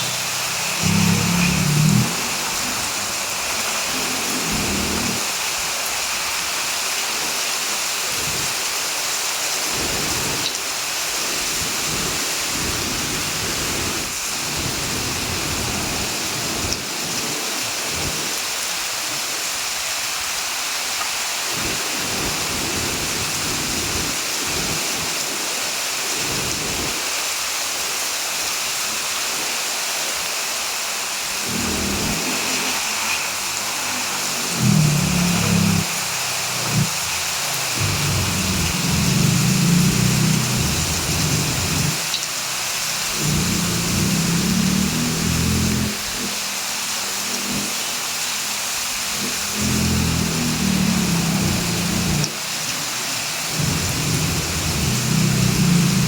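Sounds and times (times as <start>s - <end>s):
heavy rain hissing: 0.0s - 56.0s
low rumbles: 34.3s - 42.0s, 43.1s - 46.2s.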